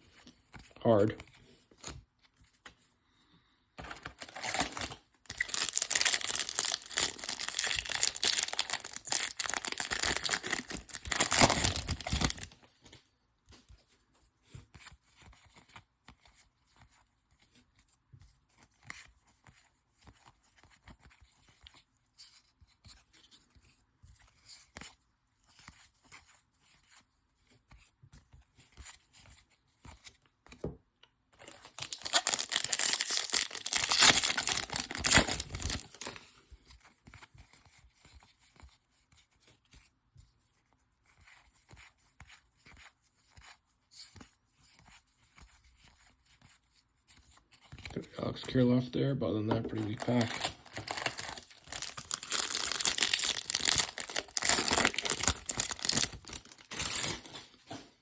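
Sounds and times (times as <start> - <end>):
cards rustling and clicking: 3.8 - 30.7, 31.4 - 39.8, 49.5 - 58.0
card pack wrapper tearing: 4.0 - 12.6, 31.4 - 36.2, 49.7 - 57.6.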